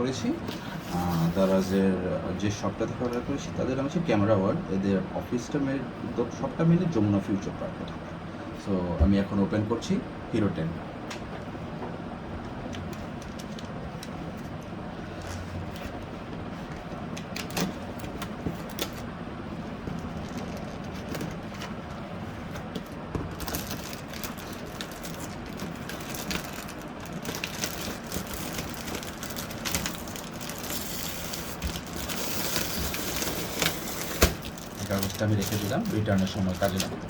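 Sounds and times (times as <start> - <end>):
low background hum: 0.0 - 37.0
clicks and crackles: 22.6 - 37.0
package wrapping crinkling and tearing: 22.8 - 37.0.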